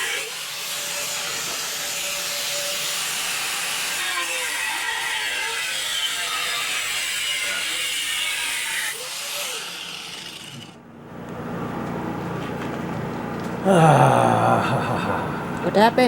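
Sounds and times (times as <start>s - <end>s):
power tool running: 9.4s - 10.8s.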